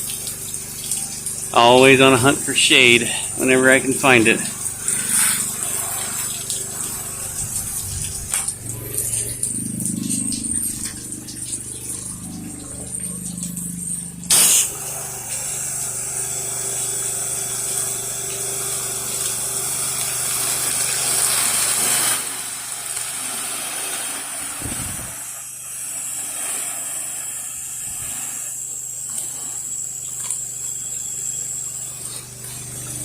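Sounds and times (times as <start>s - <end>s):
pressure washer engine running: 0.0s - 33.0s
water spray hissing: 0.0s - 33.0s
short loud burst: 14.3s - 14.8s.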